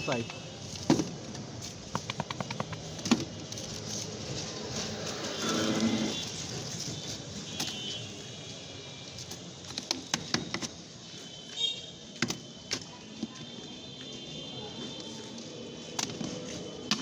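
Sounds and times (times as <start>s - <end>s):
street background noise: 0.0s - 17.0s
sharp clicks and taps: 2.0s - 3.2s.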